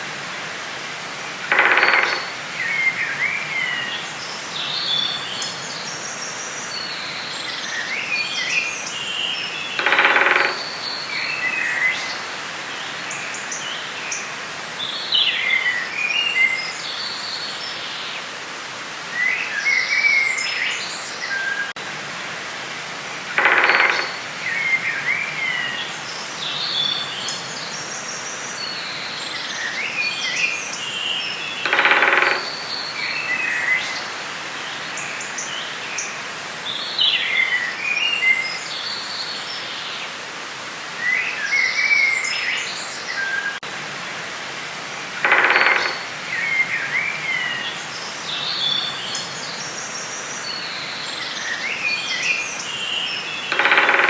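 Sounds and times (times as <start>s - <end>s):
louder lower bird call: 1.5s - 2.8s
birds chirping and trilling: 1.5s - 17.4s, 23.3s - 39.4s, 45.2s - 54.0s.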